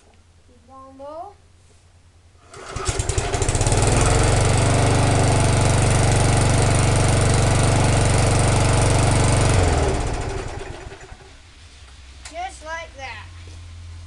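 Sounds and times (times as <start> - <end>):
lawn mower engine running: 2.4 - 11.4.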